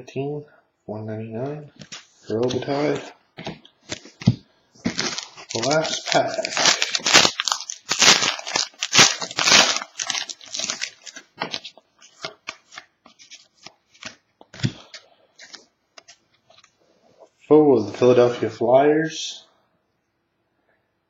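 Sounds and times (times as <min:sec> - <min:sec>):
cards being handled: 0:01.8 - 0:16.8
card pack wrapper tearing: 0:03.8 - 0:16.7.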